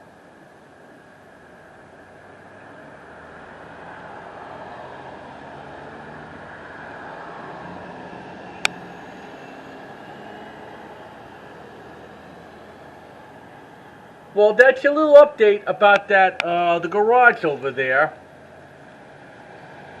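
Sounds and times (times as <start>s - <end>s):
vehicle engine rumbling: 0.8s - 20.0s.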